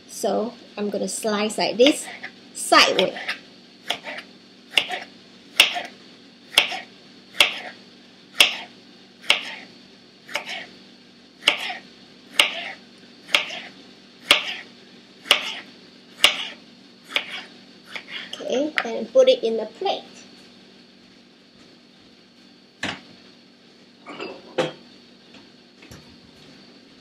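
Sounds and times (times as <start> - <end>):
knife slicing onto cutting board: 10.3 - 10.7, 11.4 - 11.8, 14.3 - 14.7, 15.3 - 18.3.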